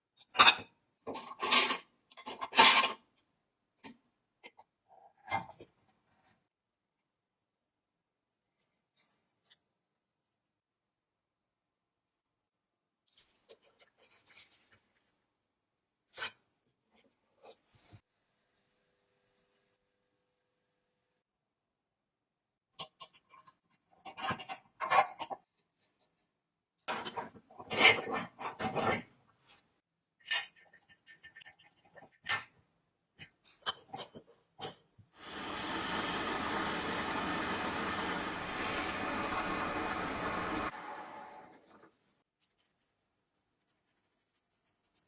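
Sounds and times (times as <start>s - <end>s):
steady hiss: 35.2s - 41.3s.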